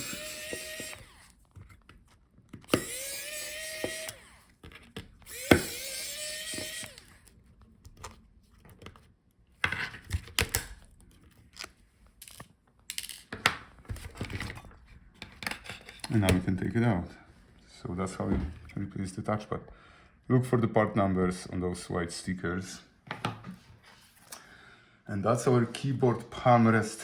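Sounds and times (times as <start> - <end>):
electric screwdriver whining: 0.0 - 1.4, 2.6 - 7.4.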